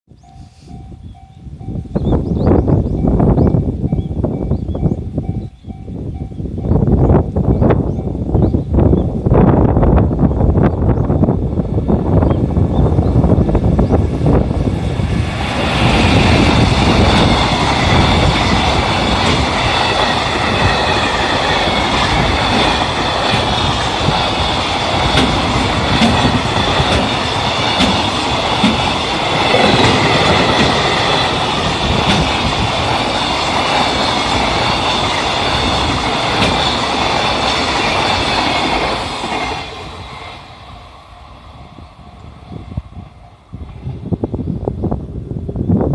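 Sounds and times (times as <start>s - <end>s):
low rumble of locomotive: 0.1s - 45.9s
train wheels clattering over rail joints: 15.2s - 40.1s.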